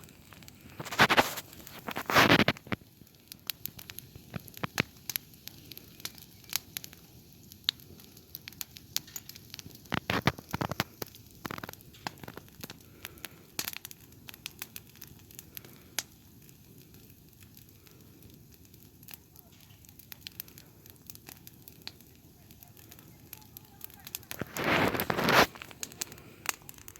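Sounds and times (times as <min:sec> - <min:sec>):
embers crackling and popping: 0:00.0 - 0:26.9.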